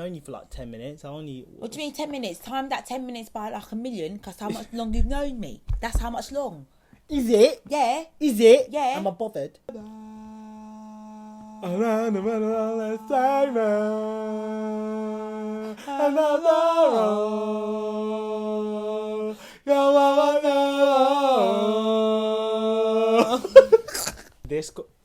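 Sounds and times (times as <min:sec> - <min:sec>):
person singing unaccompanied: 0:09.7 - 0:23.9.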